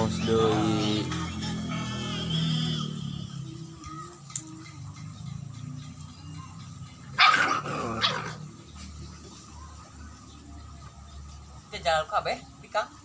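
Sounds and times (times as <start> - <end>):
dog barking: 7.2 - 8.4.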